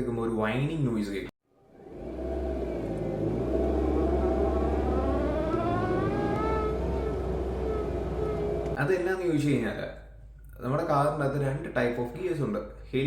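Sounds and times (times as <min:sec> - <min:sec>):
car engine drone: 0:01.6 - 0:08.8
reverse gear whine: 0:01.6 - 0:08.8.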